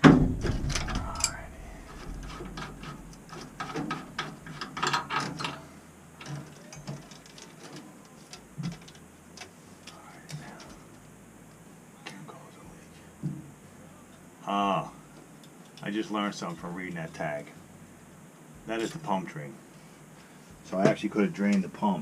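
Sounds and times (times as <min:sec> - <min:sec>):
sharp knock: 0:00.0 - 0:01.4
metal parts clicking and clattering: 0:00.4 - 0:10.9.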